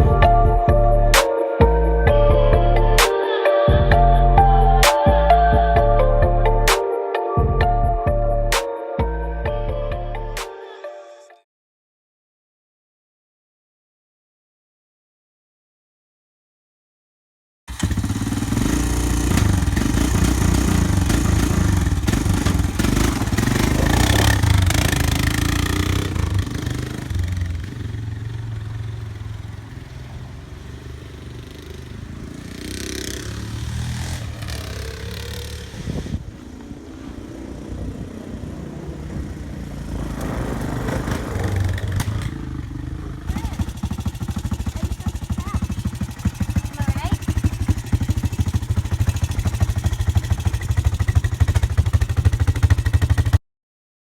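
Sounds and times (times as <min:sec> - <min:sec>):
quad bike engine running: 0:17.7 - 0:53.4.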